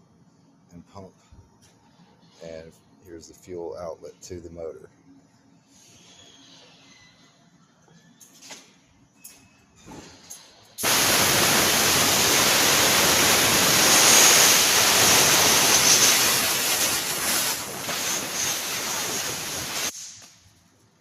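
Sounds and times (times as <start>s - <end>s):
loud hissing jet: 10.8s - 20.3s.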